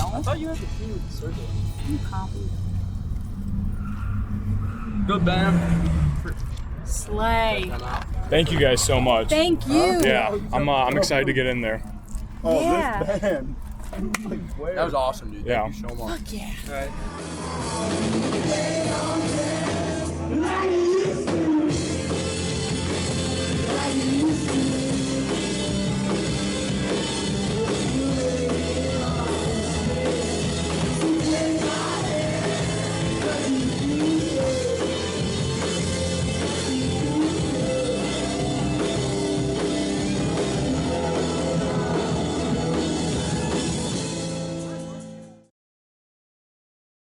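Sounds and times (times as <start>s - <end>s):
rock song with drums: 17.0s - 45.1s
person singing: 17.2s - 22.2s, 23.2s - 26.2s.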